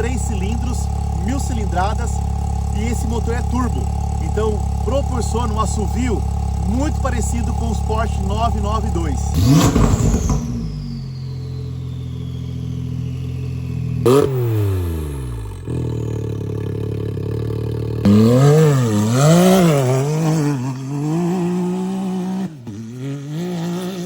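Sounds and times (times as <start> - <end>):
turbo whistle: 0.0 - 16.2
utility vehicle engine revving: 0.0 - 24.0.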